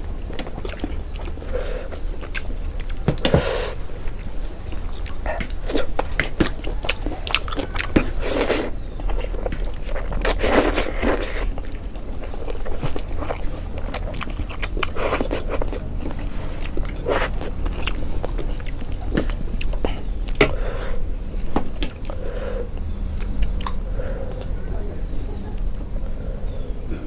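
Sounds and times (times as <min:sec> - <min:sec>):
low steady hum: 0:00.0 - 0:27.0
chewing and slurping noodles: 0:00.3 - 0:24.5
sharp crunches and clicks: 0:04.0 - 0:20.6, 0:21.3 - 0:24.5.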